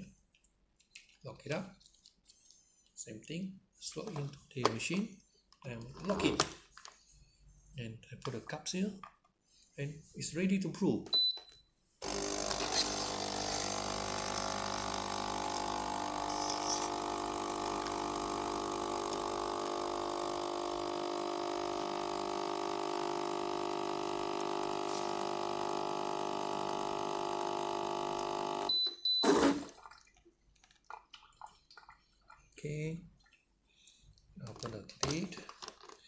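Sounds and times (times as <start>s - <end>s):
espresso machine pump humming: 12.0s - 28.8s
short high beep: 28.7s - 29.4s.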